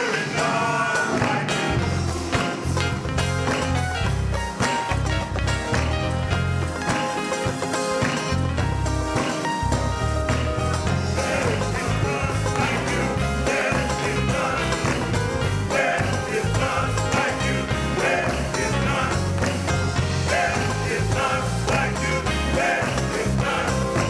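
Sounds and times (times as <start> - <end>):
church band music: 0.0 - 24.0.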